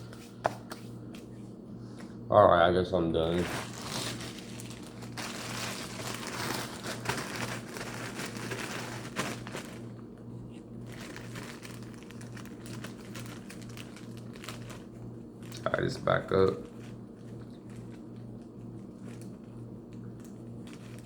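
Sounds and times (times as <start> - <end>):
popcorn bag crinkling: 3.2 - 21.0.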